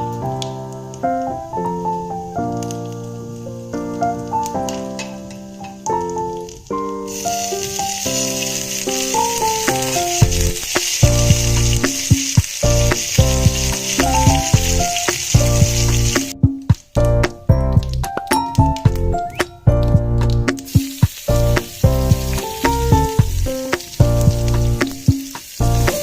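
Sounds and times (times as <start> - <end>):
piano music: 0.0 - 26.0
food sizzling in hot oil: 0.2 - 17.3, 17.9 - 26.0.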